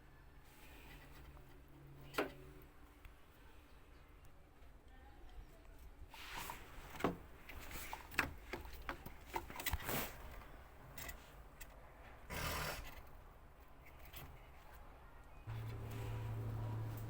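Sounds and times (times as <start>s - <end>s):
parts clicking and scraping: 6.1s - 12.2s, 12.8s - 14.8s, 15.5s - 17.0s.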